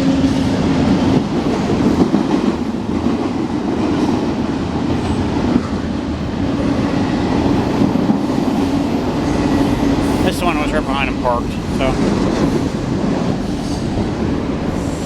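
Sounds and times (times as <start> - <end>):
train wheels clattering on rails: 0.0 - 10.2.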